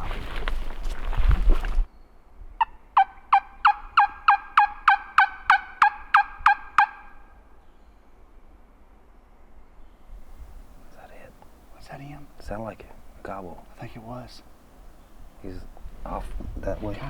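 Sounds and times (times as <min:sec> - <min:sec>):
wild turkey yelps: 0:02.6 - 0:07.3.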